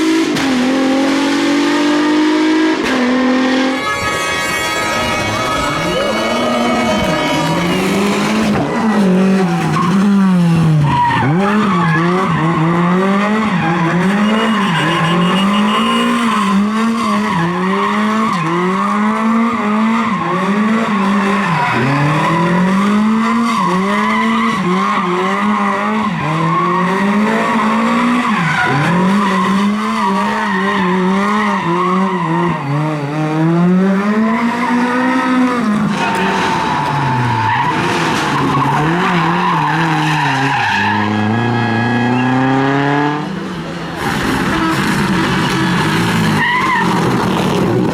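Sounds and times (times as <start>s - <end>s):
car engine revving: 0.0s - 4.2s, 4.8s - 47.9s
tyres squealing: 3.7s - 12.8s.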